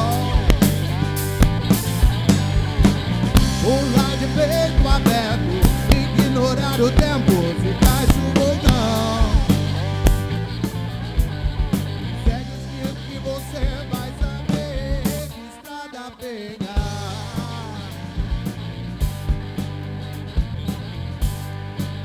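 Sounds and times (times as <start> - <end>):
lead guitar bending notes: 0.0 - 15.4
blues rock band playing: 0.0 - 22.0.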